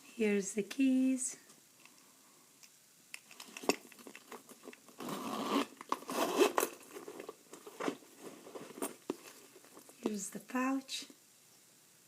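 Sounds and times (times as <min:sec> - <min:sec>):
packaging crinkling: 0:03.2 - 0:10.1.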